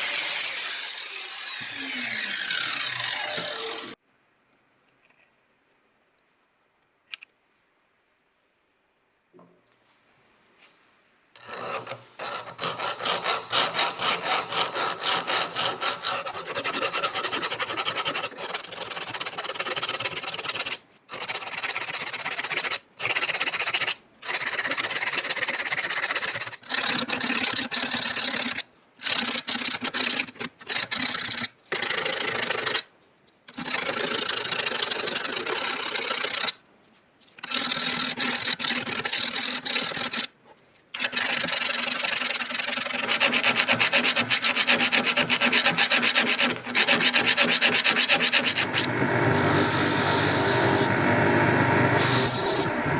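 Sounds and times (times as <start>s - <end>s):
rasping on metal hammer: 11.4s - 18.9s.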